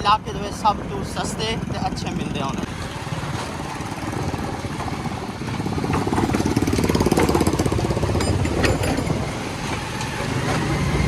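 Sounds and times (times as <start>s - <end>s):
small motorcycle engine running: 1.6s - 11.0s.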